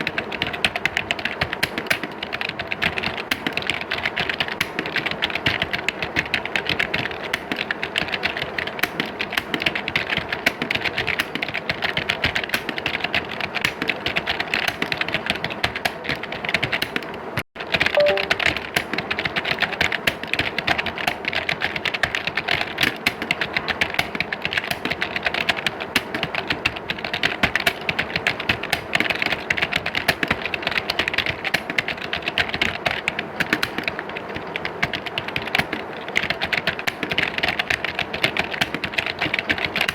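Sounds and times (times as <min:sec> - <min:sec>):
many keyboards clattering: 0:19.3 - 0:39.9.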